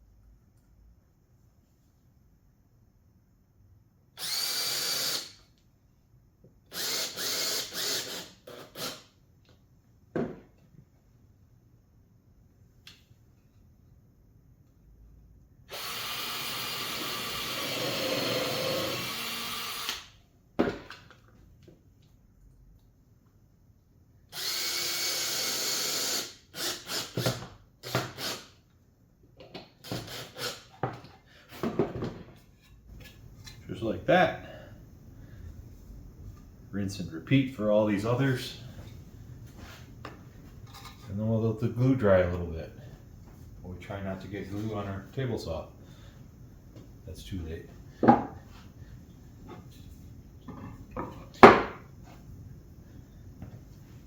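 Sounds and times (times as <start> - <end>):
power drill running: 4.2 - 5.4, 6.7 - 8.9, 15.7 - 20.1, 24.3 - 27.2
knocks and clatter of handling: 30.8 - 33.6.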